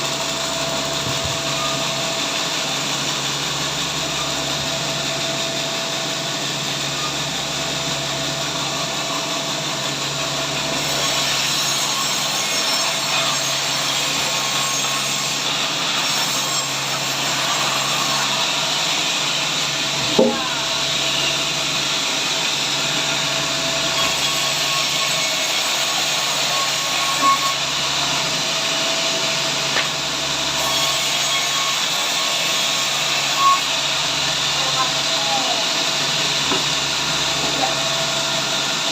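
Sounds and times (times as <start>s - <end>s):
saw cutting through log: 0.0s - 38.9s
sharp knock: 20.1s - 20.5s.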